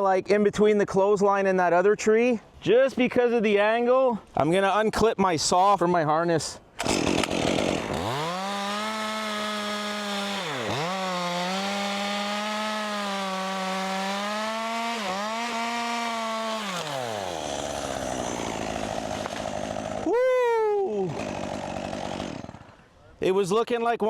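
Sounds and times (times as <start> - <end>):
chainsaw revving and cutting wood: 6.8 - 20.2, 20.8 - 22.9.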